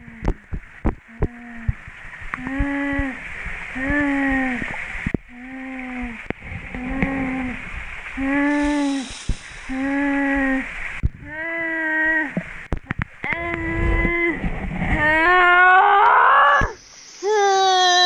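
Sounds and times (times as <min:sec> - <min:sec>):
waterfall rushing: 0:05.8 - 0:11.0
woman moaning and crying out: 0:09.7 - 0:12.4, 0:15.0 - 0:18.0.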